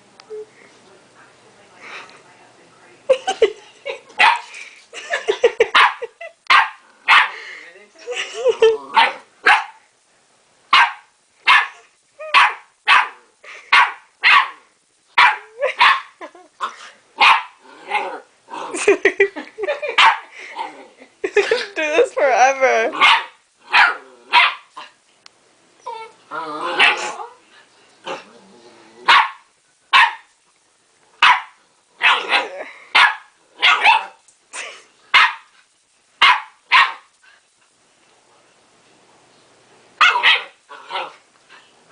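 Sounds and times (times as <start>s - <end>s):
dog barking: 4.2s - 4.5s, 5.7s - 7.4s, 9.0s - 9.8s, 10.7s - 14.6s, 15.2s - 16.1s, 17.2s - 17.6s, 20.0s - 20.2s, 23.0s - 24.7s, 29.1s - 30.3s, 31.2s - 34.2s, 35.2s - 35.5s, 36.2s - 37.1s, 40.0s - 41.1s.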